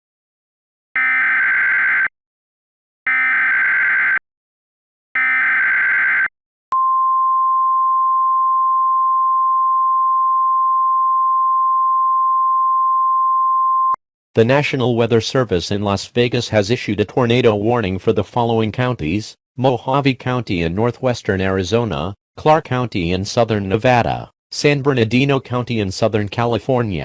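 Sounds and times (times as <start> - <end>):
steady alarm tone: 1.0 - 2.1, 3.1 - 4.2, 5.2 - 6.3.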